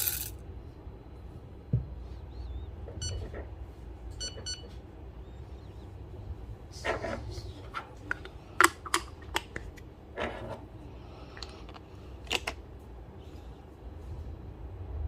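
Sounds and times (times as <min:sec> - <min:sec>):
coffee beans rattling: 0:00.0 - 0:00.4.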